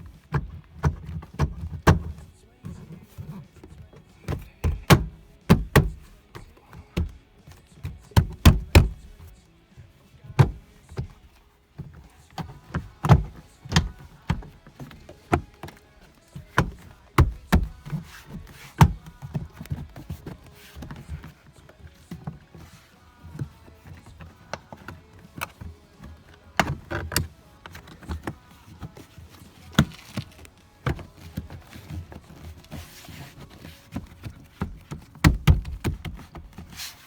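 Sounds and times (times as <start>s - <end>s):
sharp knocks and clacks of parts: 0.0s - 9.3s, 23.3s - 36.7s.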